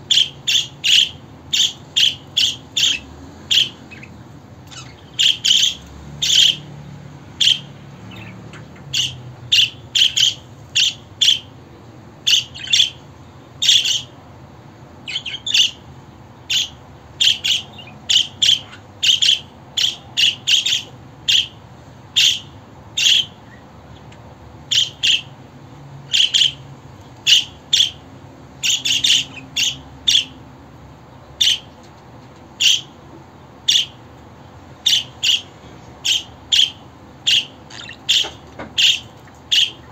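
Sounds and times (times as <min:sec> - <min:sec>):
budgerigar chirping: 0:00.1 - 0:06.7, 0:07.4 - 0:11.5, 0:12.2 - 0:13.0, 0:13.6 - 0:14.1, 0:15.1 - 0:15.8, 0:16.5 - 0:21.6, 0:22.2 - 0:25.3, 0:26.1 - 0:26.6, 0:27.3 - 0:28.0, 0:28.6 - 0:30.4, 0:31.4 - 0:31.7, 0:32.6 - 0:33.0, 0:33.7 - 0:34.0, 0:34.8 - 0:39.9.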